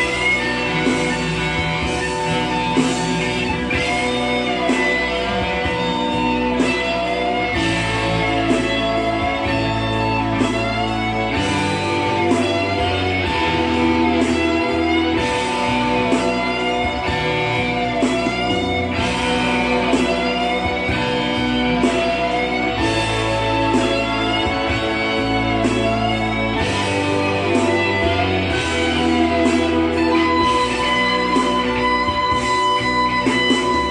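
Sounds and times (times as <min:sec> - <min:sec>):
bass and keyboards backing: 0:00.0 - 0:33.9
lead electric guitar: 0:00.0 - 0:33.9.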